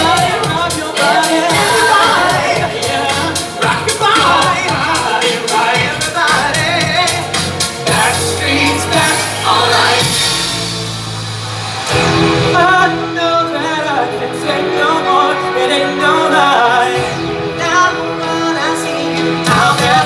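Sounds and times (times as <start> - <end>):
pop music with singing: 0.0 - 20.0.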